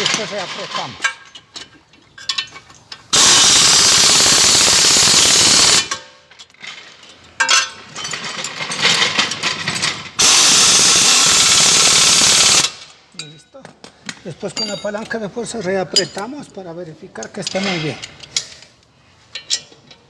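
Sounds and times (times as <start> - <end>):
metal clicks and clatter: 0.0 - 3.1, 5.9 - 10.2
pneumatic impact wrench hammering: 3.1 - 6.1, 10.2 - 12.9.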